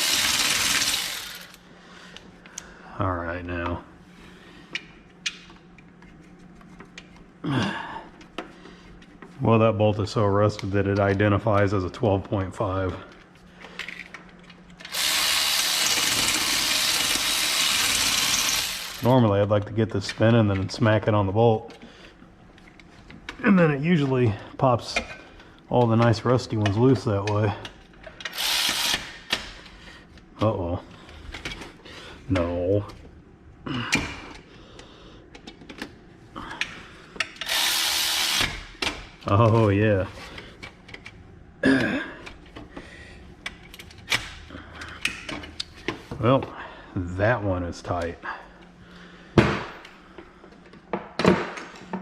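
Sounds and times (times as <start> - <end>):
cordless electric ratchet running: 0.0 - 1.6, 14.9 - 19.1, 28.3 - 29.2, 37.4 - 38.7.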